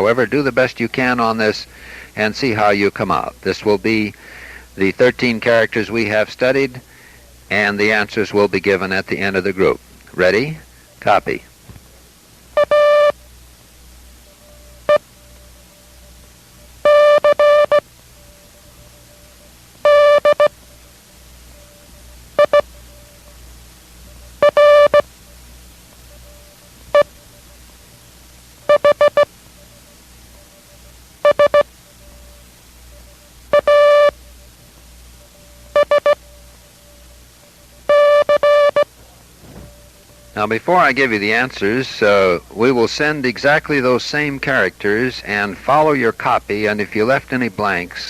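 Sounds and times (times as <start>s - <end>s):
morse code beeps: 12.6s - 13.2s, 14.2s - 20.6s, 21.5s - 23.4s, 24.0s - 25.1s, 26.1s - 27.6s, 28.7s - 38.9s.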